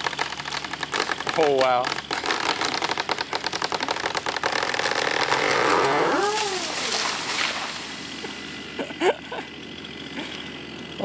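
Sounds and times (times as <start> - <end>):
engine running: 0.0 - 11.0
falling tree rushing: 0.2 - 8.8
person shouting: 6.0 - 7.0.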